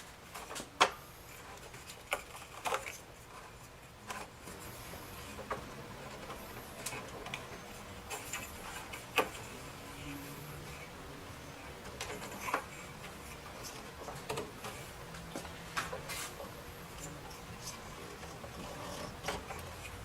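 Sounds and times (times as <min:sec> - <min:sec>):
plastic parts clicking and knocking: 0:00.3 - 0:09.6, 0:11.8 - 0:16.0.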